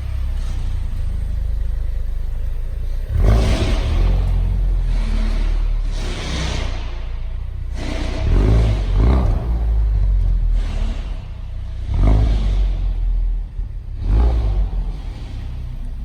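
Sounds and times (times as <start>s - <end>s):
car engine revving on a dyno: 0.0s - 16.0s.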